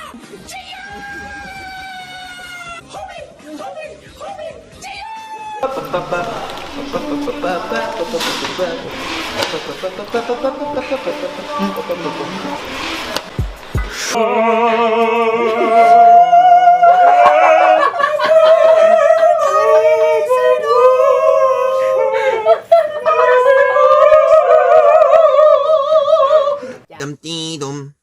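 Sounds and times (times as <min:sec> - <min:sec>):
person singing with vibrato: 0:05.6 - 0:27.0.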